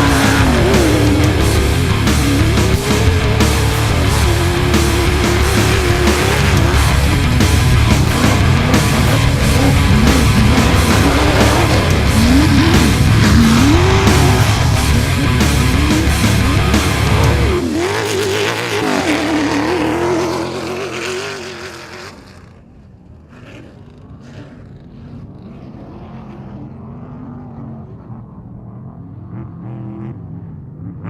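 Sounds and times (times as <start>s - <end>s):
heavy music bass: 0.0s - 20.2s
race vehicle engine revving: 0.0s - 31.0s.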